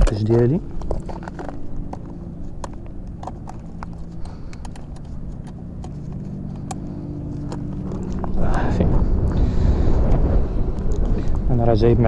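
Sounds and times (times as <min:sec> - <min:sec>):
parts clicking and knocking: 0:00.0 - 0:08.4
low engine hum: 0:00.0 - 0:12.0.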